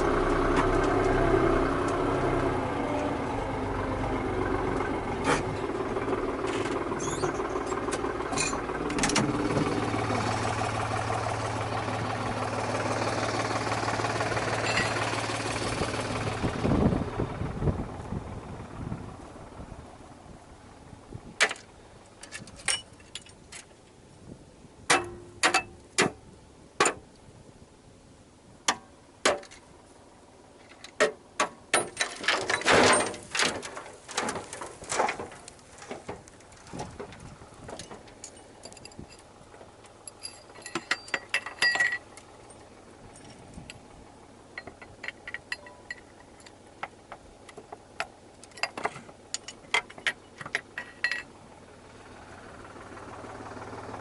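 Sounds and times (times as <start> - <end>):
sharp clicks and metallic clinks: 7.0 - 9.2, 14.6 - 15.2, 30.6 - 43.8, 44.6 - 51.3.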